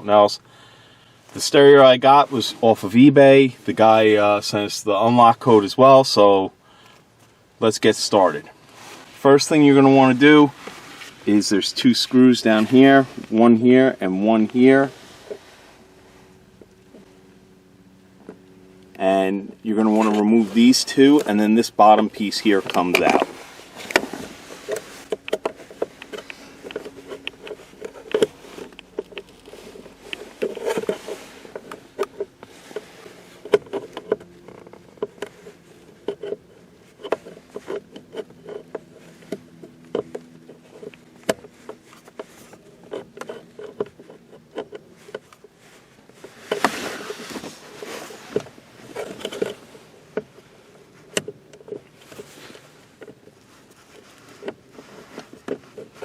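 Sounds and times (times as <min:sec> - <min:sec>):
clicks taps and scrapes of trim: 0:19.8 - 0:56.0.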